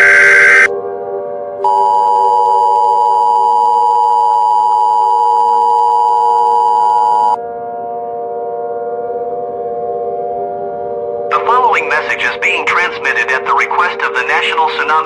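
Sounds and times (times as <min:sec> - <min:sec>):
two-tone alarm signal: 0:00.0 - 0:00.7, 0:01.6 - 0:07.4.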